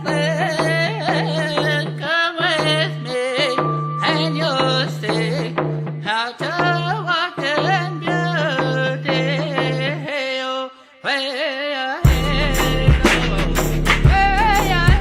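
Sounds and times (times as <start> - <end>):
melody over low drone: 3.5 - 5.6.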